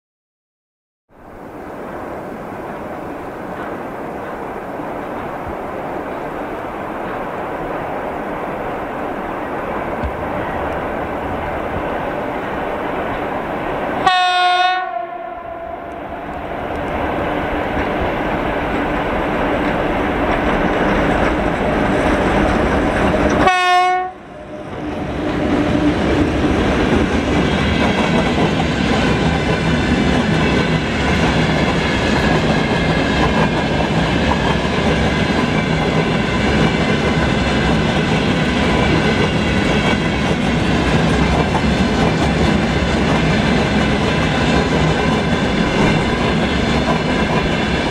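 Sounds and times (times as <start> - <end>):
train wagons rumbling on rails: 1.7 - 47.9
train horn blast: 14.0 - 16.4, 23.3 - 25.1.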